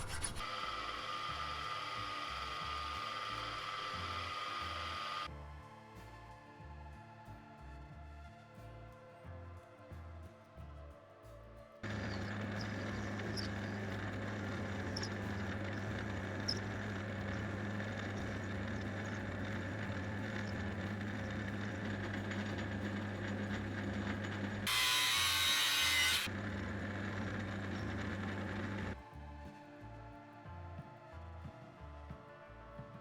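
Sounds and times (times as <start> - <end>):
power tool motor humming: 0.0 - 5.3, 11.8 - 29.0.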